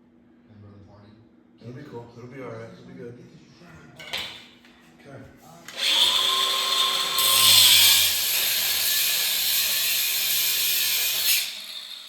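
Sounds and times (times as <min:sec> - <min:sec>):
power tool cutting metal sheet: 0:05.7 - 0:12.0.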